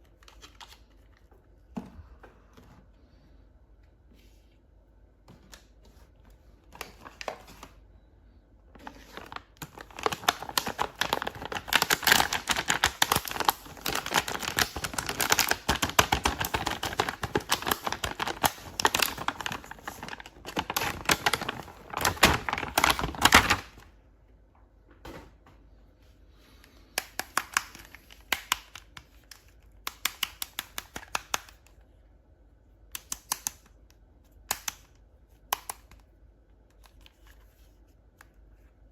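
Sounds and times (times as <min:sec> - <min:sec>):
plastic packaging crinkling and tearing: 0:08.8 - 0:23.8.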